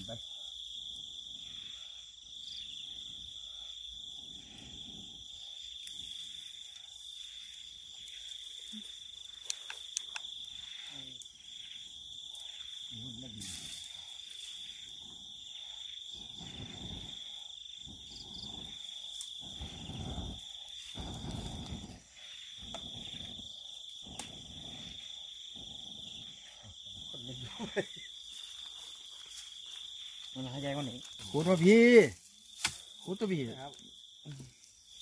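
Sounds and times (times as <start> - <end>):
high-pitched insect drone: 0.0 - 35.0
sharp clicks: 9.4 - 10.3.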